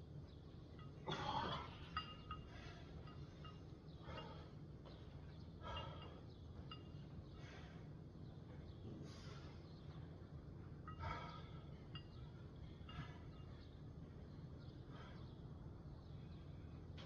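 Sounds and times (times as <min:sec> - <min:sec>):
light metallic chain clinks: 0:00.8 - 0:04.5.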